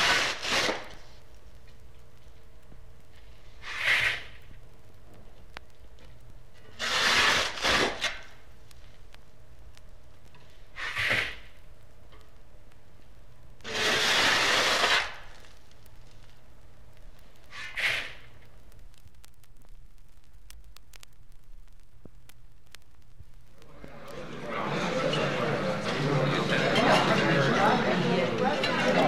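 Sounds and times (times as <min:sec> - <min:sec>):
shovel scraping sand: 0:00.0 - 0:00.9, 0:03.6 - 0:04.4, 0:06.8 - 0:08.2, 0:10.8 - 0:11.4, 0:13.7 - 0:15.2, 0:17.5 - 0:18.2
faint hum: 0:00.0 - 0:29.0
record crackle: 0:00.0 - 0:29.0.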